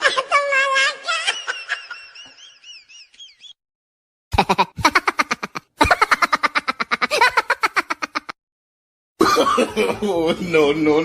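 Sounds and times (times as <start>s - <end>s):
staccato laughter: 4.4s - 8.4s.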